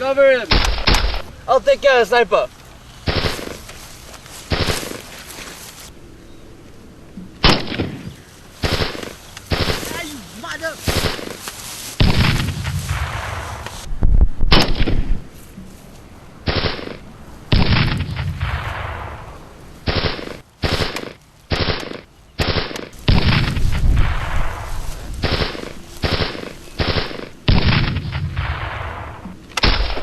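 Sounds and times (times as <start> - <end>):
echoing single gunshots: 3.0 - 3.6, 7.4 - 10.1, 12.0 - 13.8, 14.5 - 15.2, 16.4 - 30.0.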